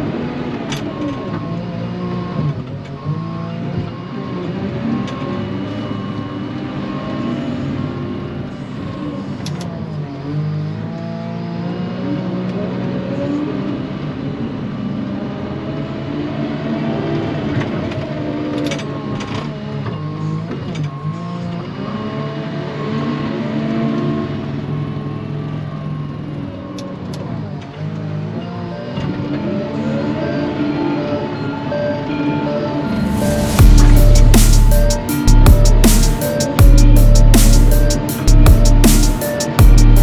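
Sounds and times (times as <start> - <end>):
thin high beep: 32.8 - 40.0.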